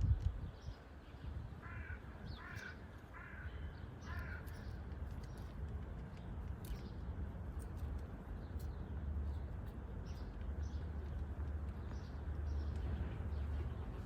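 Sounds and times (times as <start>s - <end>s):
steady low rumble: 0.0s - 14.0s
faint bird calls: 1.6s - 4.7s
soft ticks: 4.1s - 8.8s.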